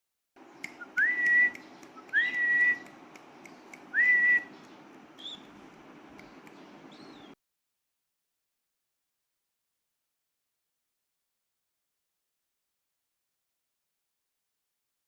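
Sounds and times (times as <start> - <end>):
whistled notes: 0.7 - 2.9, 3.9 - 4.5.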